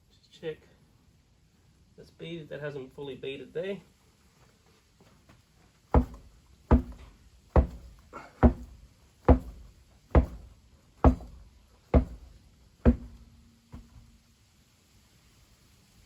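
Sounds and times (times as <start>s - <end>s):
tyre thumping with low ring: 5.9s - 14.2s.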